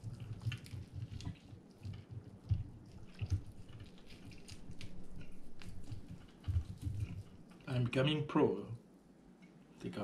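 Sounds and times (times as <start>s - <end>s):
wet chewing with clicks and smacks: 0.0s - 7.6s.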